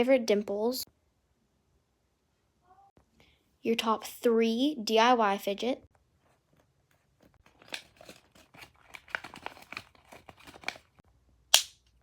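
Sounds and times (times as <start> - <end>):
toys crinkling and clicking: 7.2 - 11.0
sharp snap: 11.5 - 11.9.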